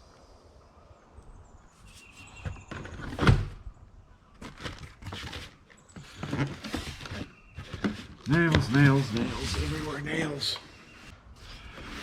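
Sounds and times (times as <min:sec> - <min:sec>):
objects rummaged in a box: 0:04.4 - 0:10.5.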